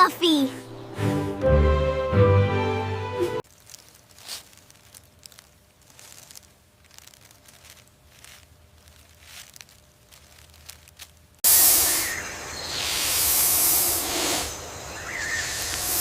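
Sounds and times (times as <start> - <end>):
faint rustling: 3.4 - 11.4
snake hissing: 11.5 - 16.0.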